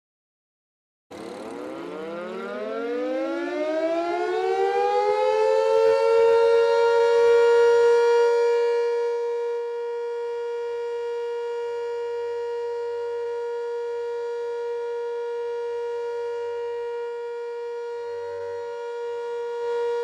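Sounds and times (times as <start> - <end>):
warning siren winding up: 1.1 - 10.0, 15.8 - 20.0.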